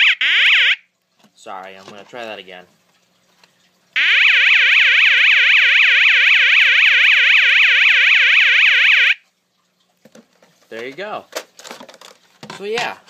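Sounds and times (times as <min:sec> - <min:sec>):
fire alarm electronic yelp: 0:00.0 - 0:00.8, 0:04.0 - 0:09.2.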